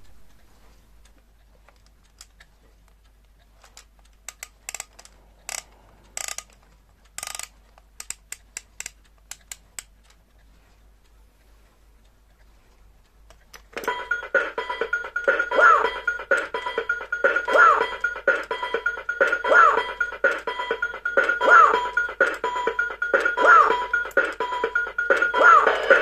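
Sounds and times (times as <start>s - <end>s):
faint low hum: 0.0s - 4.1s
alarm clock clicks: 4.3s - 9.9s, 13.6s - 26.0s.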